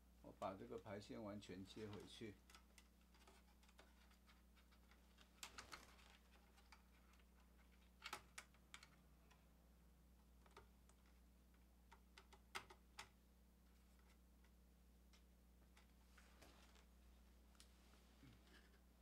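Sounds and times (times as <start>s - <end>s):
low steady hum: 0.0s - 19.0s
fingers clicking and tapping cable: 1.6s - 9.6s, 10.2s - 13.2s.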